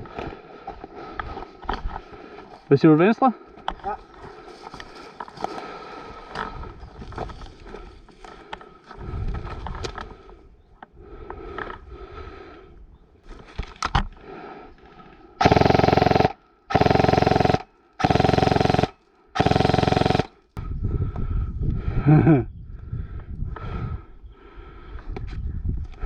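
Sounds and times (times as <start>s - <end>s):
rapid automatic gunfire: 15.4s - 20.4s.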